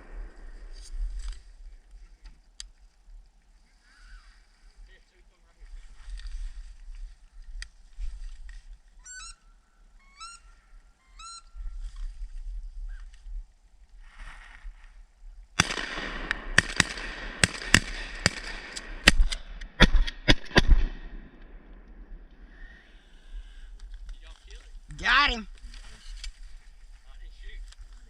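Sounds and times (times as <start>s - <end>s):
squealing duck calls: 9.0s - 9.4s, 10.0s - 11.6s
shotgun blasts: 15.6s - 22.2s.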